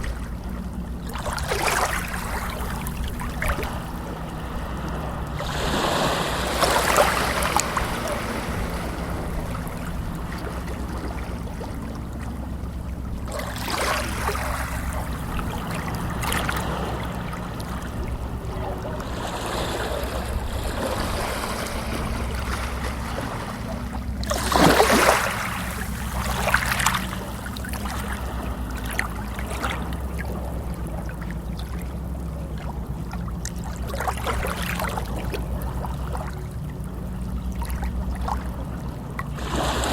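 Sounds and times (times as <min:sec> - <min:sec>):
low rumble: 0:00.0 - 0:39.9
running water: 0:00.0 - 0:39.9
water splashing: 0:00.0 - 0:39.9.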